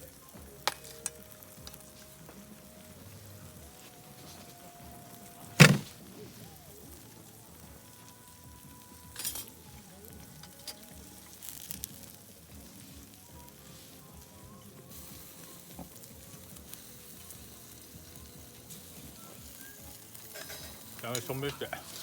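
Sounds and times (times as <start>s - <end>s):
food sizzling in a pan: 0.0s - 22.0s
sharp knock: 5.6s - 5.9s.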